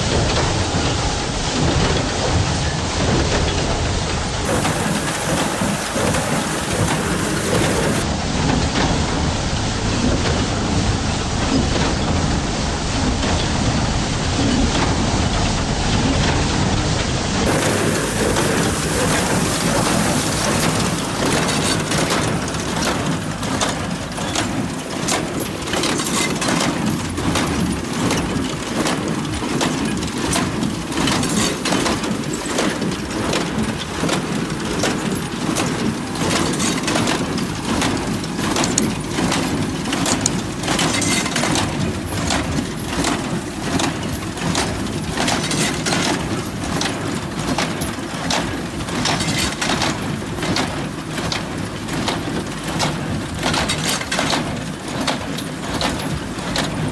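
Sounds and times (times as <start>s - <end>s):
tractor engine rumbling: 4.4s - 8.0s, 17.5s - 56.9s.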